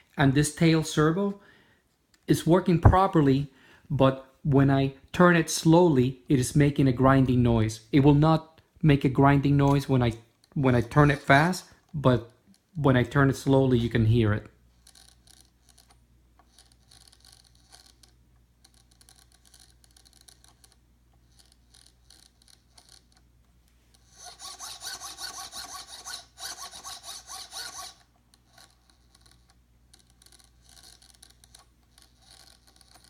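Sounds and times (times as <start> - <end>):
servo gears grinding: 24.2 - 28.0.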